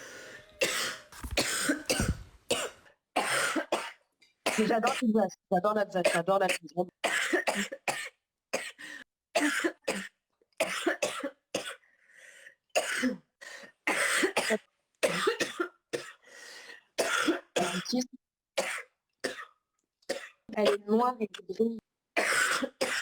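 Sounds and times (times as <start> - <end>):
woman coughing: 0.6 - 5.0, 6.0 - 8.8, 9.4 - 11.8, 12.8 - 13.3, 13.9 - 16.2, 17.0 - 18.0, 18.6 - 19.5, 20.1 - 20.9, 22.2 - 23.0.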